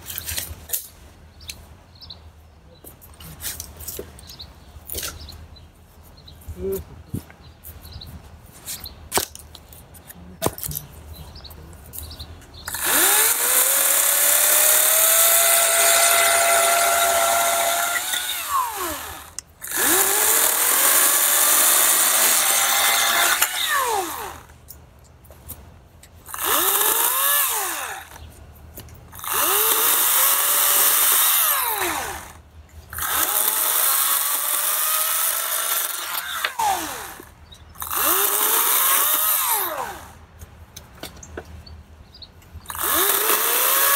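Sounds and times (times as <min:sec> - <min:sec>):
chainsaw cutting log: 0:12.7 - 0:24.5, 0:26.3 - 0:28.3, 0:29.2 - 0:40.2, 0:42.6 - 0:43.9.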